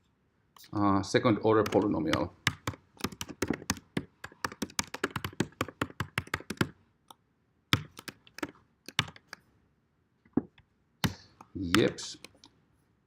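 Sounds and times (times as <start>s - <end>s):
computer keyboard typing: 1.6s - 6.8s, 7.7s - 9.4s, 11.0s - 12.5s.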